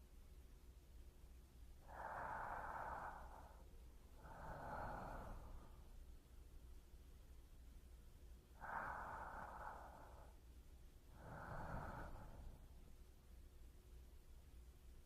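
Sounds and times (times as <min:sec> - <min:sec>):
person breathing slowly: 0:01.8 - 0:06.2, 0:08.5 - 0:13.0.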